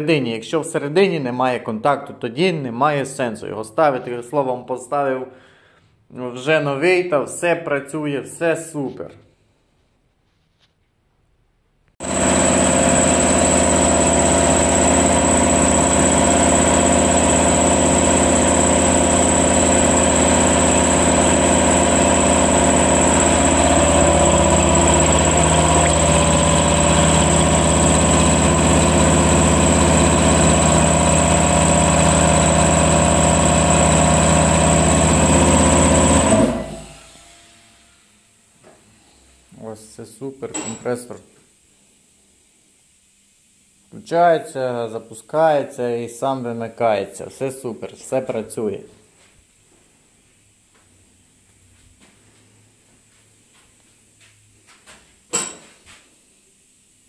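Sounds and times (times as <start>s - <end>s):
compressor running with high whine: 12.0s - 48.8s.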